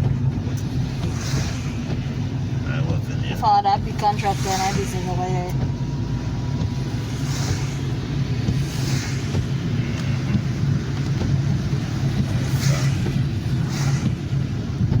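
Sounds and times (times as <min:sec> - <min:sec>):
car engine rumble: 0:00.0 - 0:15.0
road noise: 0:00.0 - 0:15.0
brief swishes: 0:08.6 - 0:09.5, 0:12.3 - 0:14.2.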